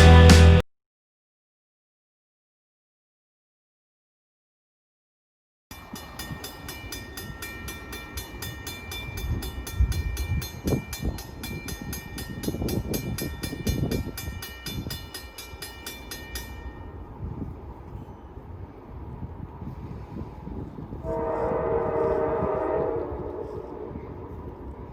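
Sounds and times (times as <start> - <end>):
bell ringing rapidly: 5.7 - 16.9
freight train rumbling: 5.7 - 24.9
train clanks: 5.7 - 24.9.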